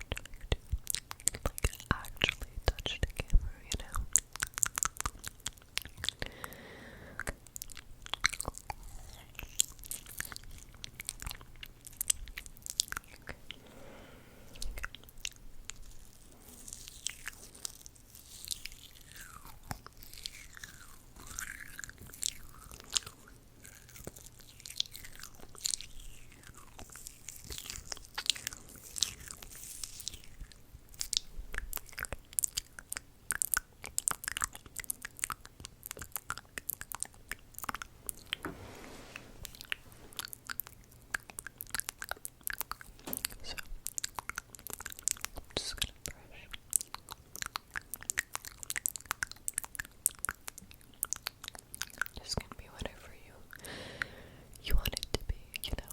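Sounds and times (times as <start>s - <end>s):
wet mouth clicks and smacks: 0.0s - 6.3s, 7.2s - 13.6s, 14.5s - 16.2s, 16.9s - 38.4s, 39.5s - 53.7s, 54.5s - 55.9s
mouth sliding sounds: 38.0s - 40.2s.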